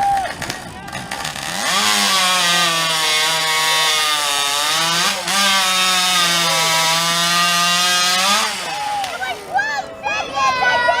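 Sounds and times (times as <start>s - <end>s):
chainsaw cutting log: 0.1s - 9.6s.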